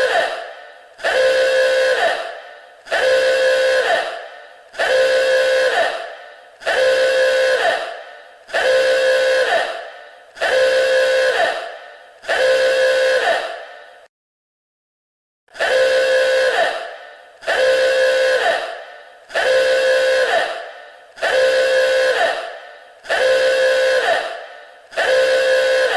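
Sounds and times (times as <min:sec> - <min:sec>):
warning alarm horn blasts: 0:00.0 - 0:14.1, 0:15.5 - 0:25.9.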